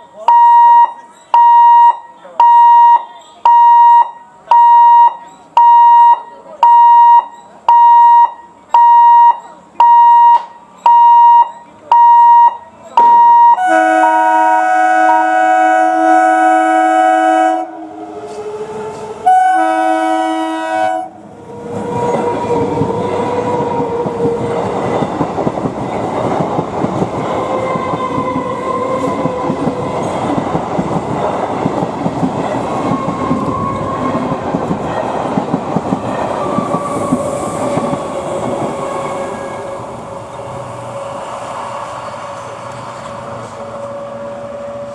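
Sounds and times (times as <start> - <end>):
electronic warning beeps: 0.2 - 13.6
train wheels rushing on rails: 8.4 - 44.9
train horn blasts: 13.4 - 21.3.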